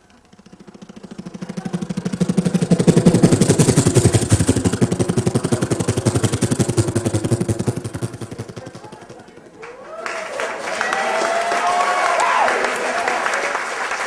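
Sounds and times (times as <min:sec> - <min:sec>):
man imitating a helicopter: 0:00.0 - 0:09.6.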